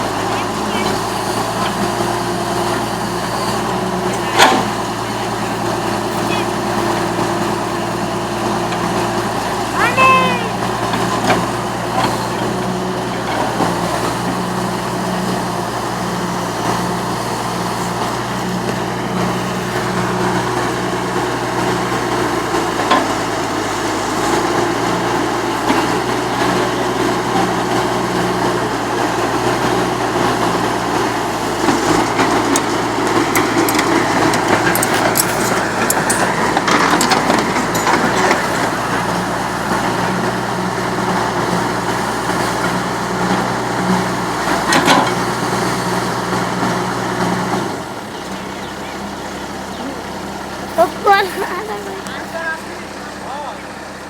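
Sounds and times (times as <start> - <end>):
diesel engine running: 0.0 - 54.0
metallic clattering: 32.6 - 38.7.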